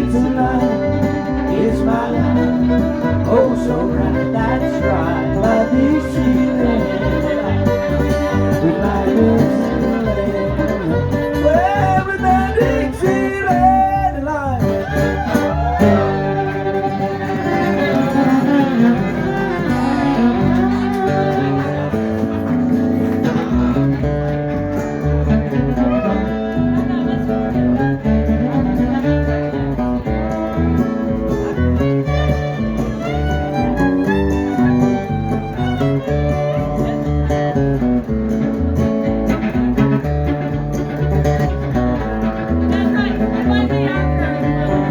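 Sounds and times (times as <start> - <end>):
bluegrass band playing: 0.0 - 44.9
fiddle sliding melody: 0.0 - 44.9
guitar: 0.0 - 44.9
pulsing bass line: 0.0 - 44.9.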